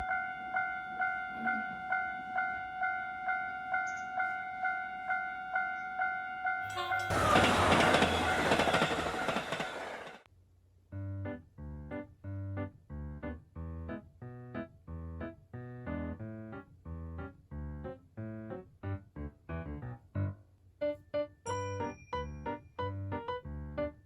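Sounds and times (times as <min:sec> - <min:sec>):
railroad crossing bell clanging: 0:00.0 - 0:10.2
train rumbling past: 0:06.8 - 0:10.2.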